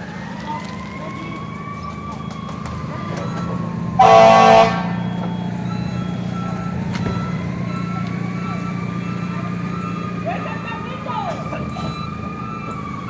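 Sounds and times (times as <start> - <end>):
backing-up alarm beeping: 0.0 - 13.0
fire truck engine hum: 0.0 - 13.0
loud horn blast: 4.0 - 5.3.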